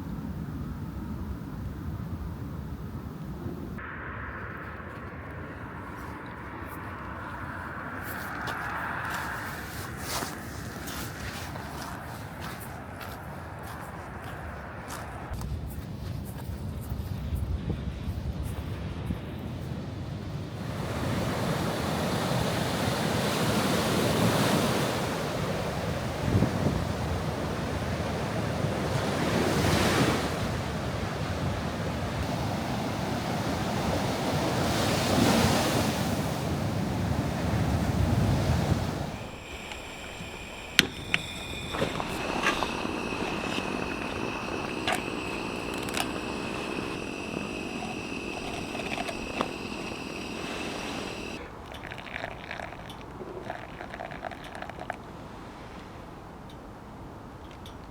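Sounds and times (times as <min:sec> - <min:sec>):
wind gusting: 0:00.0 - 0:16.0, 0:16.6 - 0:54.9
faint high whine: 0:20.6 - 0:54.9.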